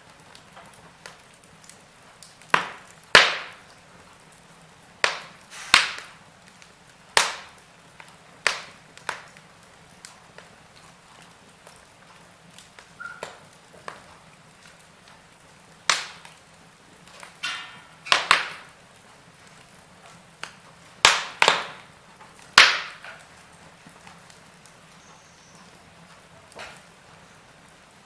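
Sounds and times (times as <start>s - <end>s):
faint steady hiss: 0.0s - 28.0s
wood fire crackling: 0.0s - 28.0s
sharp loud fire pops: 2.4s - 3.6s, 5.0s - 6.2s, 7.2s - 7.6s, 15.9s - 16.3s, 17.3s - 18.7s, 21.0s - 21.9s, 22.6s - 23.2s.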